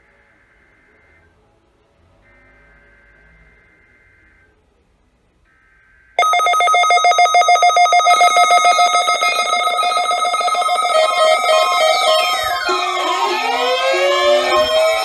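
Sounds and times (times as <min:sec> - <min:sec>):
electronic alert beeping: 0:06.2 - 0:15.0
faint steady data tones: 0:06.2 - 0:15.0.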